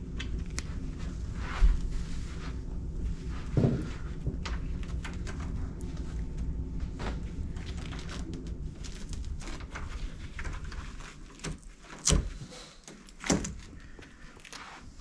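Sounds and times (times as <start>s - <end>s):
low rumble: 0.0s - 11.2s.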